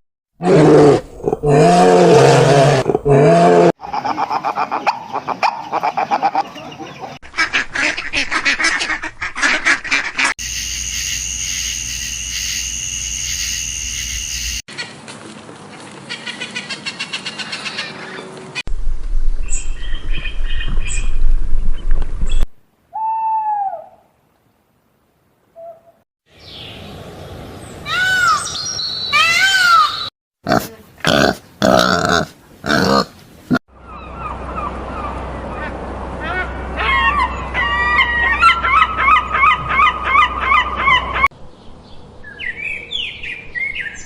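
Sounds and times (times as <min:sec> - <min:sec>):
bird calls: 0:16.0 - 0:18.6, 0:27.6 - 0:30.1.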